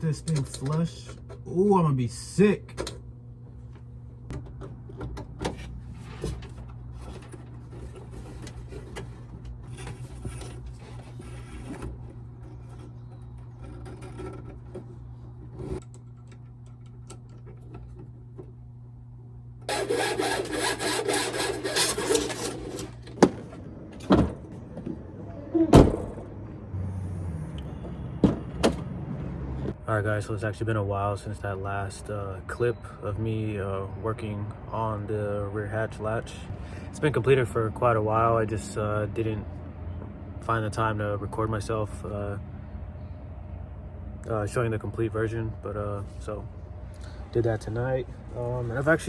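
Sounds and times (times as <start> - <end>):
grinding tool on metal: 19.7 - 23.1.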